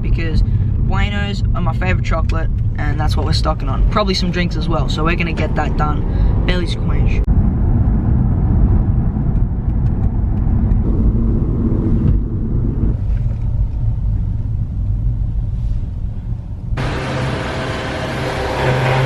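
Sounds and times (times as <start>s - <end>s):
car engine and road noise: 0.0s - 19.0s.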